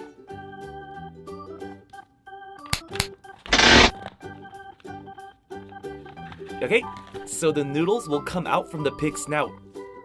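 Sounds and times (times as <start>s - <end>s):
organ-like keyboard music: 0.2s - 6.0s.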